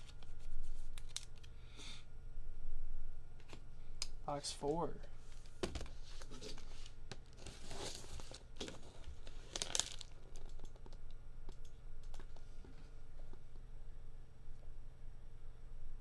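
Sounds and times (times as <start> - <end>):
plastic wrapping ripping and crinkling: 0.0 - 1.5, 5.3 - 11.1.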